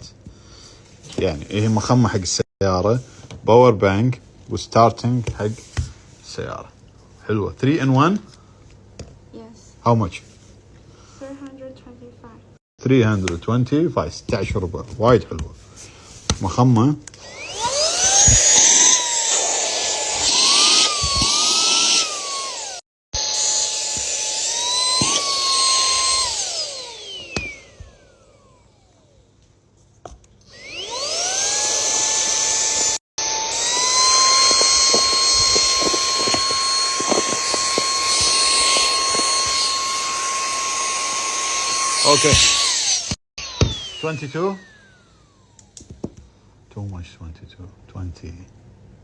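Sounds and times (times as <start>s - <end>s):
handheld vacuum motor whining: 17.1s - 29.3s, 30.5s - 46.3s.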